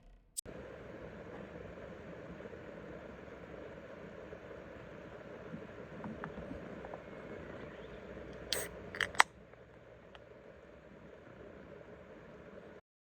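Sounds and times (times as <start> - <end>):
sharp mechanical clicks: 8.4 - 9.3.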